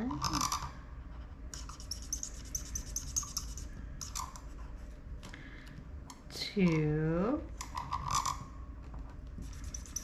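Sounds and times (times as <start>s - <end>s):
pen scribbling on paper: 1.6s - 3.7s, 9.4s - 10.0s.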